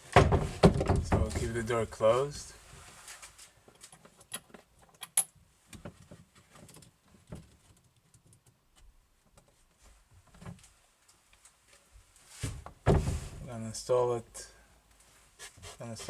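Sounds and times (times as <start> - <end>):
metal hardware clicking and clinking: 4.2 - 5.3.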